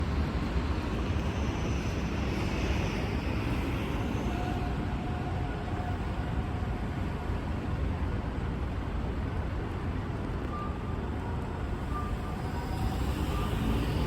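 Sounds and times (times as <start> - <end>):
street traffic rumble: 0.0 - 14.0.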